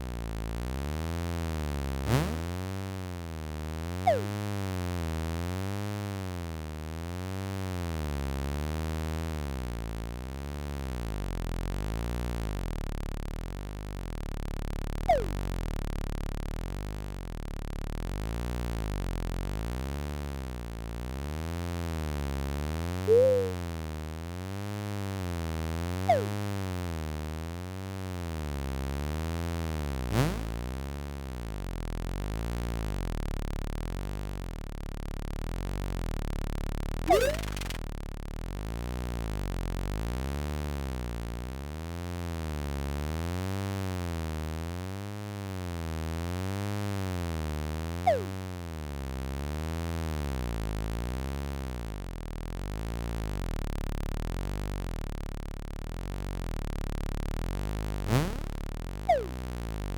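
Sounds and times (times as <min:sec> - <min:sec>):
wavering electronic drone: 0:04.0 - 0:04.5, 0:15.1 - 0:15.6, 0:23.1 - 0:23.8, 0:26.1 - 0:26.7, 0:37.1 - 0:37.8, 0:48.0 - 0:48.8, 0:58.0 - 0:59.9
cartoon pitch-glide effects: 0:04.1 - 0:04.4, 0:15.1 - 0:15.4, 0:23.1 - 0:23.7, 0:26.1 - 0:26.5, 0:37.1 - 0:37.8, 0:48.1 - 0:48.4, 0:58.1 - 0:59.5.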